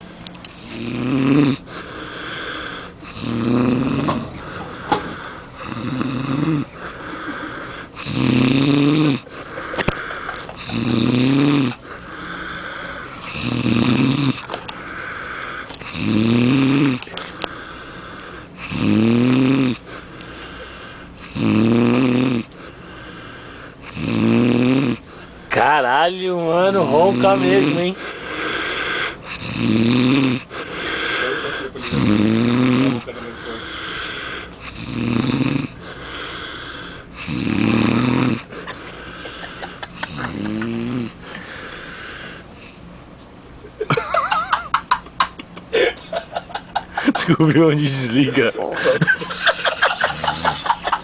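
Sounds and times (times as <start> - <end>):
boy snoring loudly: 0.6 - 1.6, 2.2 - 4.3, 5.6 - 6.7, 7.9 - 9.2, 10.6 - 11.8, 13.3 - 14.5, 15.9 - 17.0, 18.6 - 19.8, 21.3 - 22.5, 23.9 - 25.0, 26.8 - 33.1, 34.2 - 38.5, 39.1 - 41.2
soft breathing: 11.8 - 13.4, 14.5 - 15.9, 17.2 - 18.6, 22.5 - 23.9, 30.4 - 31.8, 35.8 - 37.3, 41.2 - 43.0.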